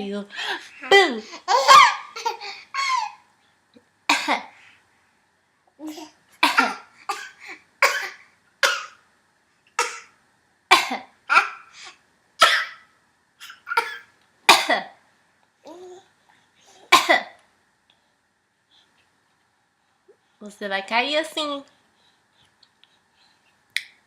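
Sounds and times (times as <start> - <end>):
baby pretend coughing: 4.1 - 4.5, 6.4 - 9.0, 9.8 - 11.7, 12.4 - 14.9, 16.9 - 17.4.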